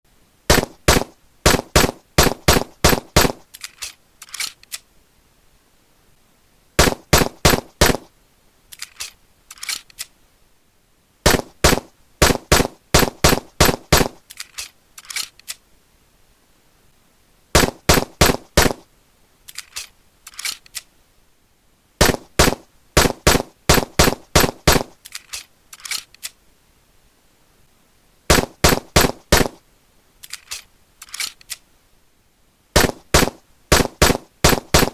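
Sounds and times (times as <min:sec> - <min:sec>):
pistol shots: 0:00.5 - 0:03.4, 0:06.8 - 0:08.1, 0:22.0 - 0:25.0, 0:28.3 - 0:29.6, 0:32.8 - 0:34.9
fainter thinner shots: 0:00.5 - 0:04.8, 0:06.8 - 0:08.1, 0:11.2 - 0:15.4, 0:17.6 - 0:18.9, 0:22.0 - 0:26.4, 0:28.3 - 0:29.6, 0:32.8 - 0:34.9.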